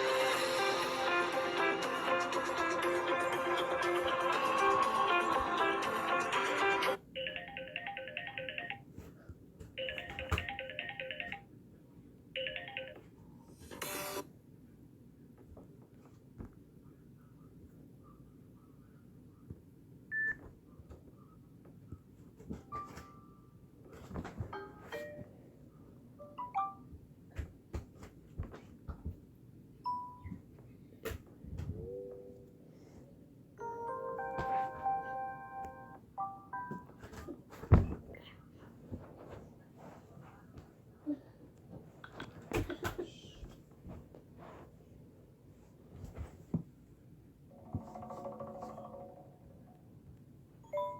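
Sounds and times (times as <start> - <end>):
electronic ringtone beeps: 7.2 - 8.8, 9.8 - 11.4, 12.4 - 13.0
guitar ringtone: 7.2 - 8.8, 9.8 - 11.4, 12.4 - 13.0, 33.6 - 36.8
phone notification chimes: 33.6 - 36.8.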